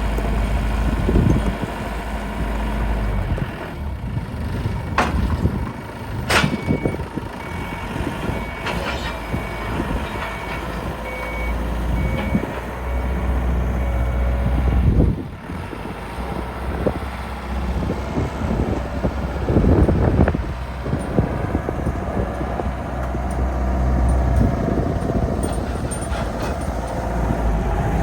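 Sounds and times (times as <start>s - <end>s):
forklift engine running: 0.0s - 28.0s
reversing alarm beeping: 6.4s - 14.2s.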